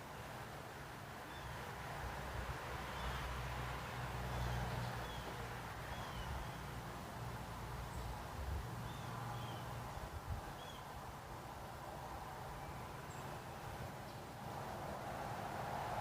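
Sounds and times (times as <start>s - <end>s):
small birds chirping: 4.3s - 6.8s, 7.8s - 9.8s, 10.4s - 11.0s.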